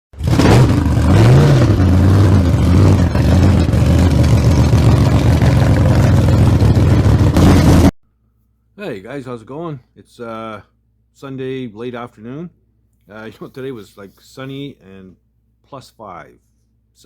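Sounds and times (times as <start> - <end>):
loud engine running: 0.1 - 7.9.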